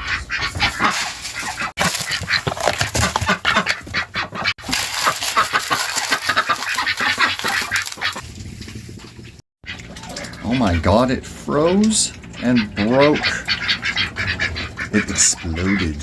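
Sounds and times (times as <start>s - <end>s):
poultry calling: 0.0s - 8.2s.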